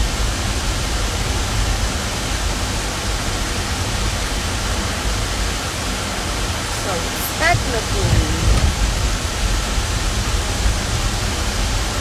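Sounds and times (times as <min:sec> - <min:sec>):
deep rumble: 0:07.0 - 0:09.4.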